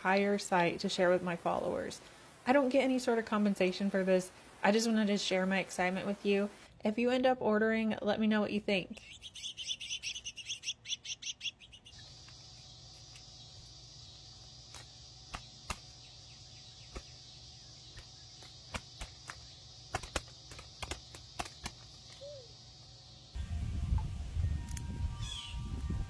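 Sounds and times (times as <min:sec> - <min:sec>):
steady high hiss: 0:00.0 - 0:06.7, 0:12.0 - 0:26.0
small birds twittering: 0:09.0 - 0:23.4.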